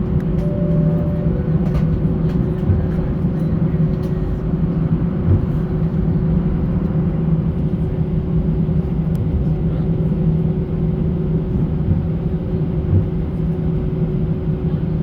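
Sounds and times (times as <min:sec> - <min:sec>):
jet engines idling drone: 0:00.0 - 0:07.6.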